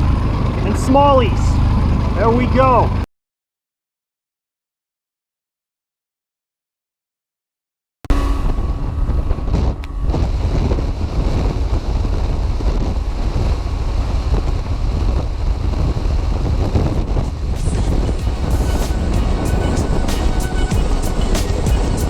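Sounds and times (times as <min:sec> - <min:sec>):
boat motor: 0:00.0 - 0:03.0
water noise: 0:08.1 - 0:22.0
wind buffeting microphone: 0:08.2 - 0:22.0.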